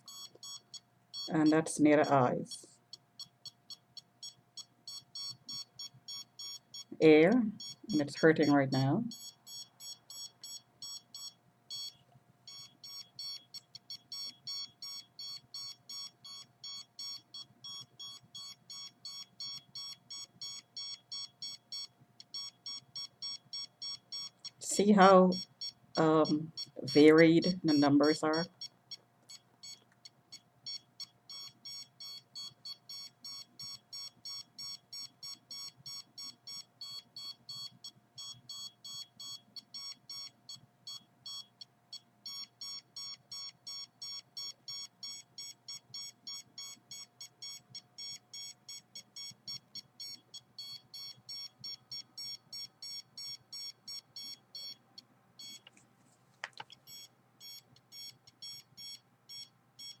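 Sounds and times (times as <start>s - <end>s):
meter beeping: 0.0s - 0.6s, 3.2s - 28.7s, 30.7s - 54.8s, 56.9s - 60.0s.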